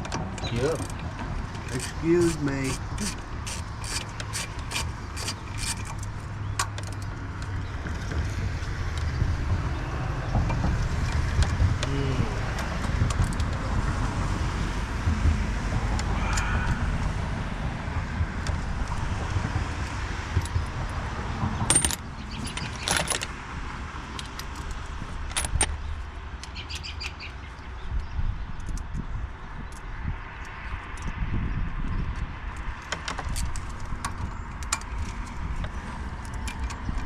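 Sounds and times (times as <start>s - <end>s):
metal tools clinking: 0.4s - 6.1s, 21.7s - 23.3s.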